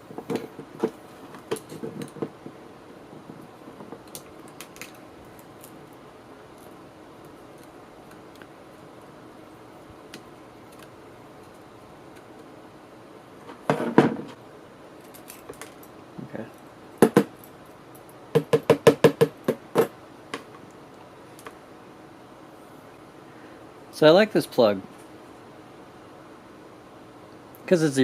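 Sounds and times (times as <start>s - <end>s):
hard objects knocking on surface: 17.0s - 17.3s, 18.4s - 20.5s.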